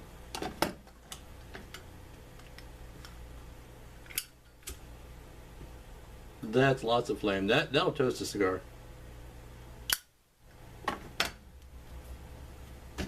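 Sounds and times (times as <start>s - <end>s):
faint steady hiss: 0.0s - 13.0s
lighter lid and igniter clicks: 9.9s - 10.1s.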